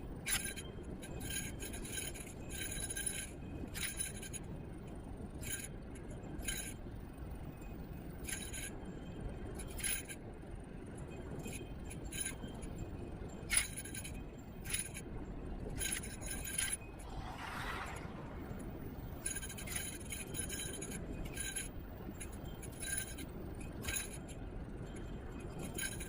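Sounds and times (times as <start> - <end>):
road and wind rumble: 9.3 - 26.0
metallic clinks and rattles: 13.3 - 15.0, 19.0 - 26.0.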